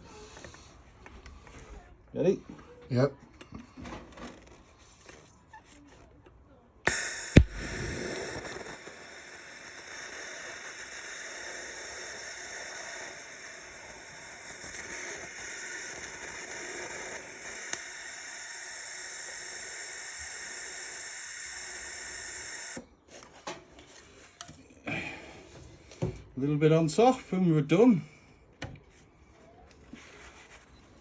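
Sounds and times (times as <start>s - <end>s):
welding arc hissing: 6.9s - 22.8s.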